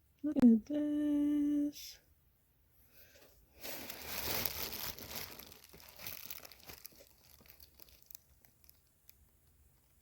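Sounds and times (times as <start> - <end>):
packaging crinkling and rustling: 3.5 - 10.0.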